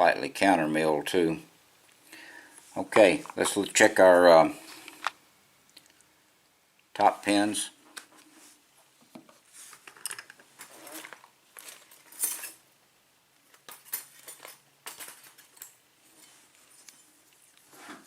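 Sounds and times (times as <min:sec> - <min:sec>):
metal lock parts clinking: 0:09.9 - 0:12.6, 0:13.5 - 0:15.8.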